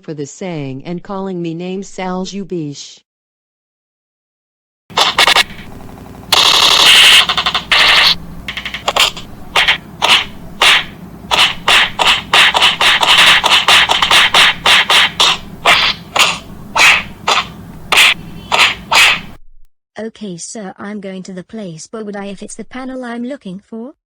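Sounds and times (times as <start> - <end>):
cartoon scuffing hits: 6.4 - 19.4.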